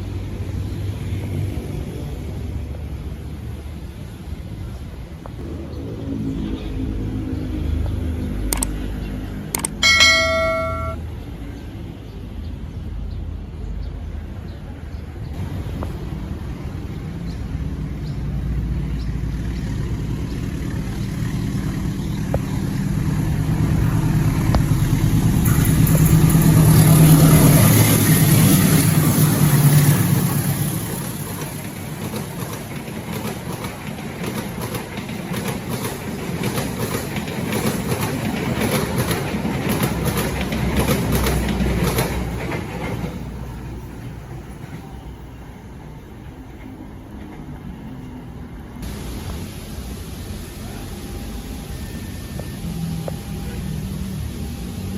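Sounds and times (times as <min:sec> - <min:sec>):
locomotive engine passing: 0:15.4 - 0:54.9
train wheels clattering over rail joints: 0:24.1 - 0:43.9.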